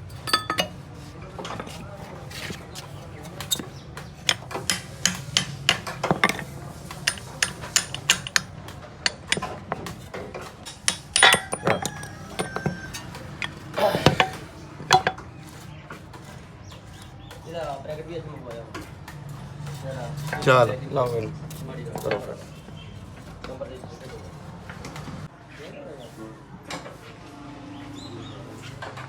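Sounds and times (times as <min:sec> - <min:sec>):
tools and metal parts clinking: 0:00.0 - 0:15.3.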